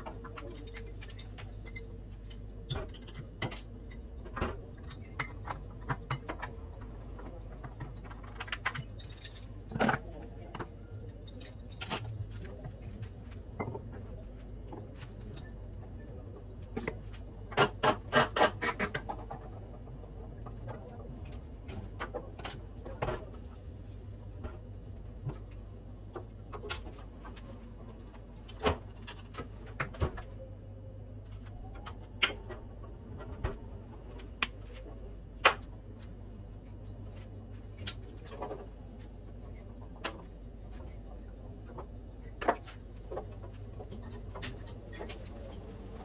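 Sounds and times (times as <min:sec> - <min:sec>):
tools clicking and knocking: 0:00.0 - 0:06.6
steady low hum: 0:00.0 - 0:46.0.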